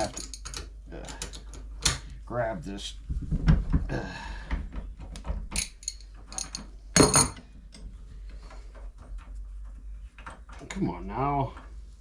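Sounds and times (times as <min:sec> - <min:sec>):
metal tools clicking and scraping: 0:00.0 - 0:01.9, 0:05.5 - 0:07.9.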